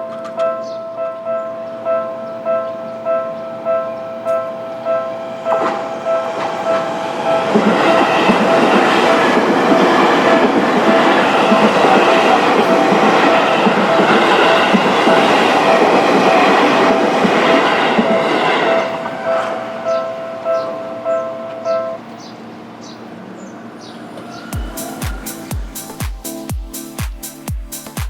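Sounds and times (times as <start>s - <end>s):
level crossing warning bell: 0.0s - 22.3s.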